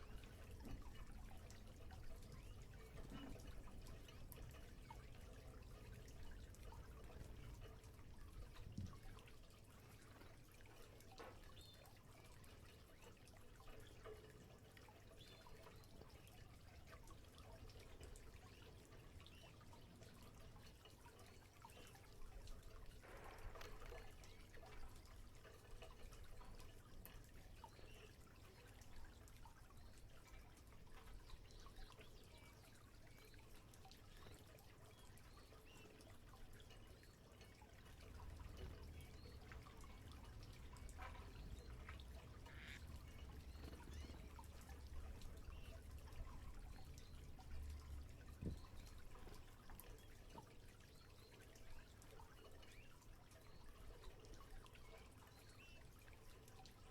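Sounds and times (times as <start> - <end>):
bird splashing in water: 38.6 - 45.6.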